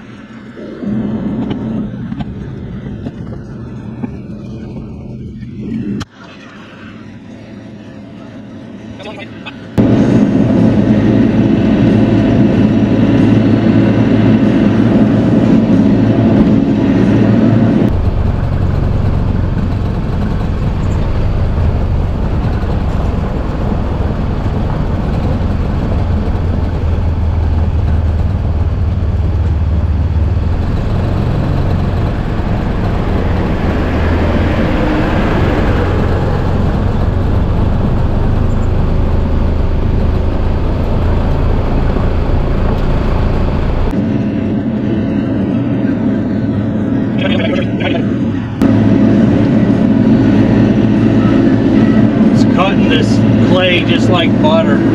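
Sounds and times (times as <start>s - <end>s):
excavator diesel engine under load: 9.8s - 44.4s, 47.2s - 54.9s.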